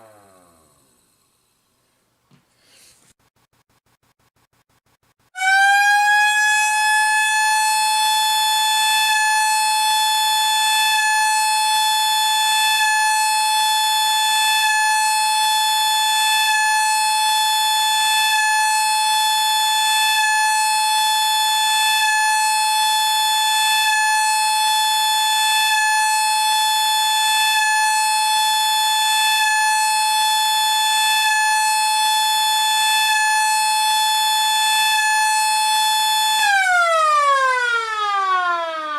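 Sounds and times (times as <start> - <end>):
air raid siren wailing: 5.4 - 32.0, 32.8 - 38.9.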